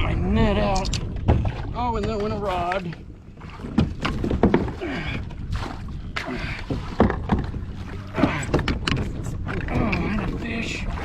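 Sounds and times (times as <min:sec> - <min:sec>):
gear knocking against kayak hull: 0:03.5 - 0:05.4, 0:06.6 - 0:11.0.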